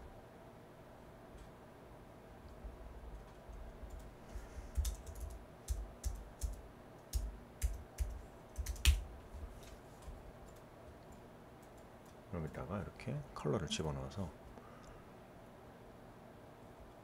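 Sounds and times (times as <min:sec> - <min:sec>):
keyboard and mouse clicks: 0:04.7 - 0:09.0.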